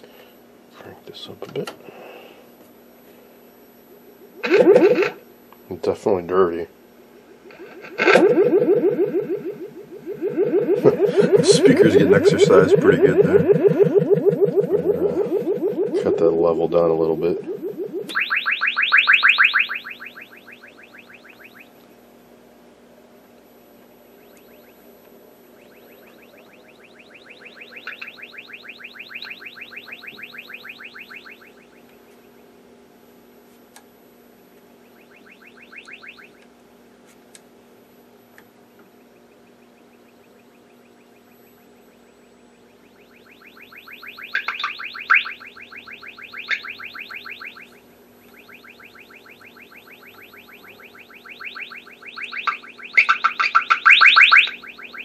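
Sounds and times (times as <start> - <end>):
steady low hum: 0.0 - 55.0
pulsing test tone buzz: 4.2 - 5.3, 7.5 - 21.8, 24.0 - 32.1, 39.0 - 55.0.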